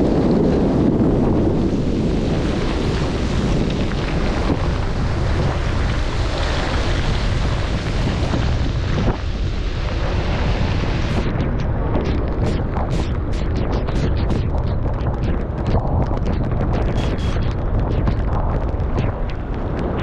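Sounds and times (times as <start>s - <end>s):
wind buffeting microphone: 0.0s - 20.0s
rain hiss on wet road: 1.4s - 11.0s.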